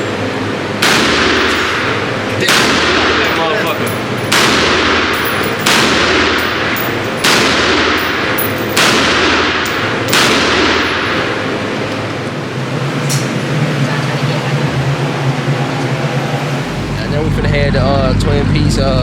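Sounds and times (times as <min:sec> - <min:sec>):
gunshots with echo: 0:00.8 - 0:12.2.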